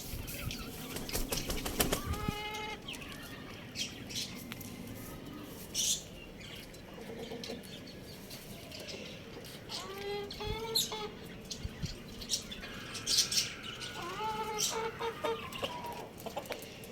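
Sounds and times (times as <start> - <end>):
small birds chirping: 0.0 - 16.9
chicken calling: 9.7 - 11.3, 12.6 - 16.5.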